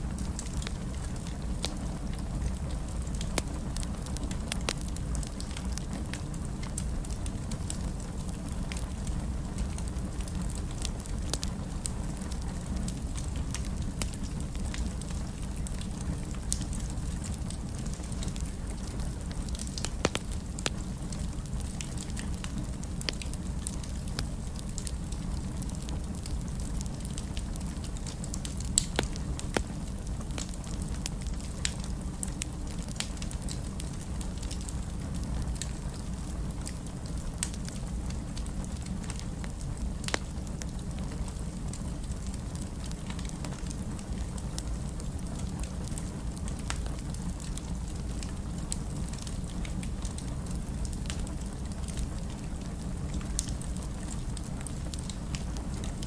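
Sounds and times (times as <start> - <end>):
fire crackling and popping: 0.0 - 56.0
fire rumbling: 0.0 - 56.0.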